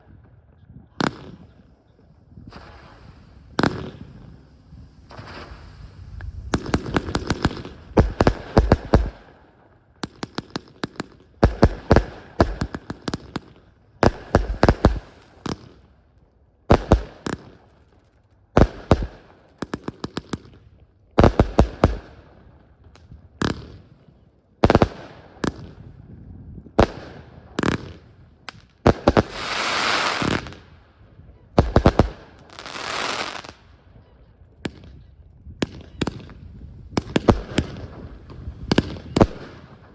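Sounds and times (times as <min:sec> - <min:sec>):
fireworks bangs and crackles: 0:00.0 - 0:39.9
fireworks hissing rushes: 0:02.3 - 0:09.0, 0:14.1 - 0:15.5, 0:29.0 - 0:30.6, 0:31.6 - 0:33.6.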